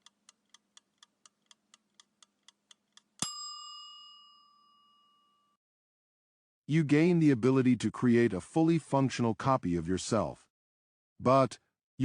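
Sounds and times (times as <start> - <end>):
clock ticks: 0.0 - 3.3
bell ding: 3.2 - 5.6.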